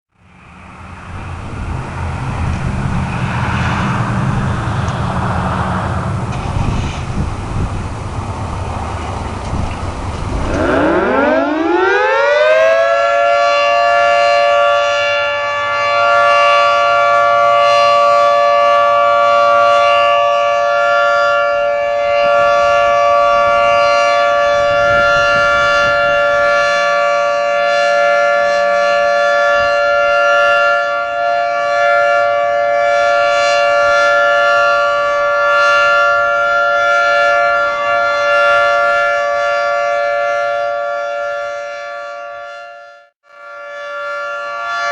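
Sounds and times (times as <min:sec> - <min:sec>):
warning siren winding up: 0:10.0 - 0:44.9.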